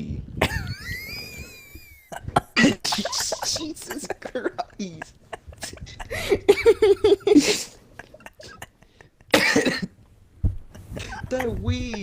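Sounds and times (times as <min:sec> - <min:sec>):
person wheezing laughter: 0:00.4 - 0:09.8, 0:10.8 - 0:12.0
harsh gasping breath: 0:05.9 - 0:06.5.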